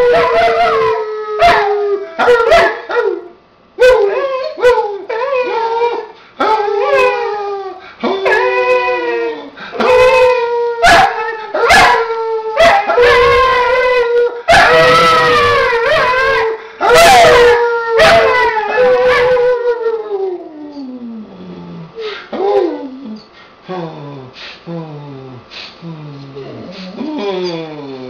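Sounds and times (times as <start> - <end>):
dog howling and yipping: 0.0 - 21.0.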